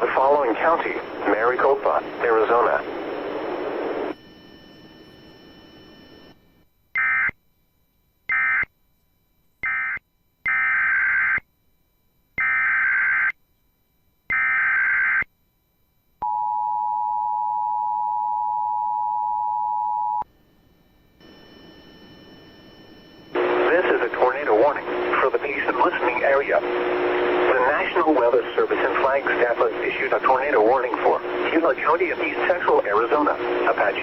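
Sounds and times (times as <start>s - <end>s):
digital data bursts: 23.3s - 34.0s.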